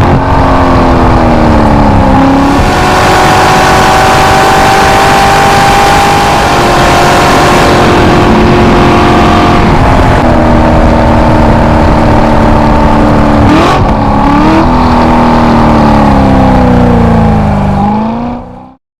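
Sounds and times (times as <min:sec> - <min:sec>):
vehicle engine droning: 0:00.0 - 0:18.8.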